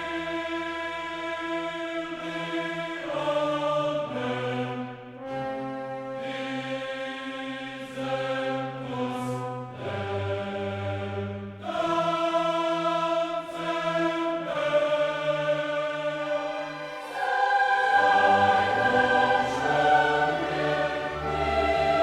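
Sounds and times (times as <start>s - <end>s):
choir singing held chords: 0.0s - 22.0s.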